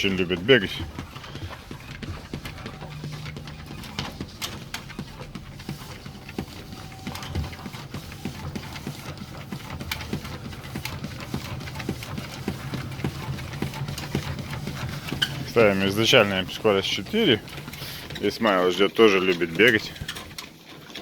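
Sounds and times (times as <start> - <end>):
low motor hum: 0.0 - 18.4
dog claws clicking on treadmill: 0.0 - 21.0.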